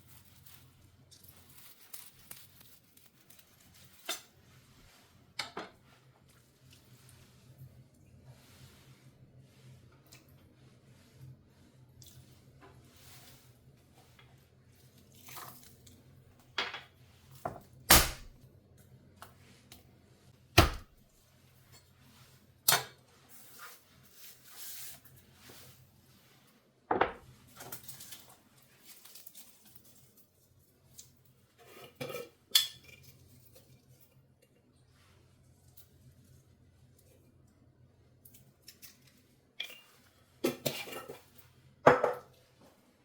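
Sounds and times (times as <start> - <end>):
dishes and cutlery clinking: 31.6 - 33.2.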